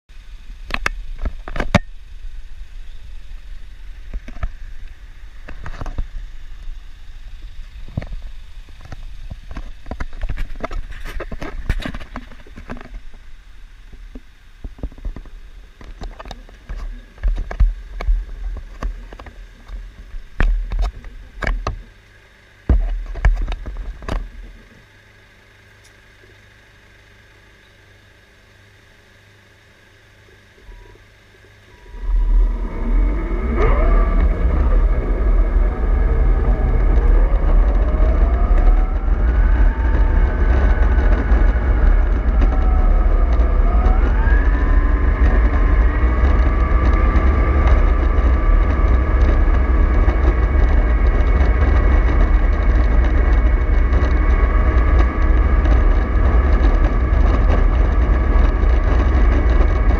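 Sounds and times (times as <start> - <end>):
faint steady whine: 0.0 - 59.9
low hum: 0.0 - 59.9
model bus rumbling and clattering: 31.9 - 59.9.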